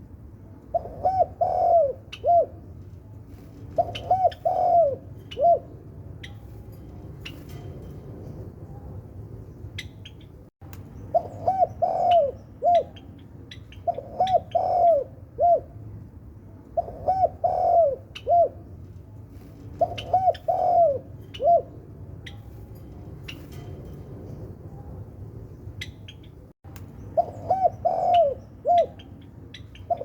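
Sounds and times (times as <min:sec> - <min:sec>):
dove cooing: 0:00.7 - 0:02.7, 0:03.7 - 0:06.4, 0:11.1 - 0:15.8, 0:16.8 - 0:18.8, 0:19.8 - 0:21.8, 0:27.2 - 0:30.0.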